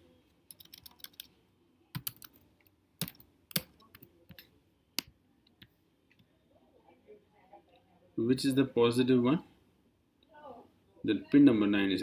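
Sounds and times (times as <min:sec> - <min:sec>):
small plastic parts clicking: 0:02.0 - 0:06.2.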